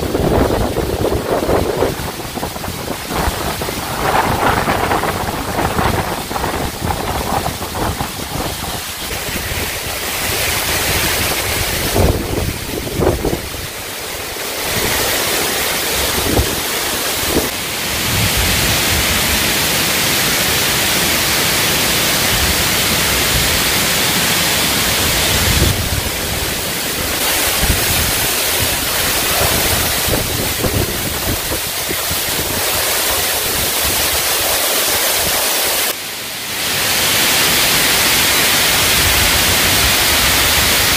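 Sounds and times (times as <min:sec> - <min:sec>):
wind gusts on microphone: 0:00.0 - 0:19.6, 0:24.5 - 0:35.9
waterfall roaring: 0:00.0 - 0:40.9.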